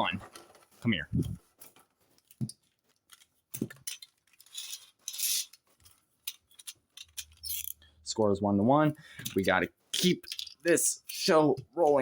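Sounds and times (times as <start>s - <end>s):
plastic and metal parts clicking: 1.6s - 7.8s.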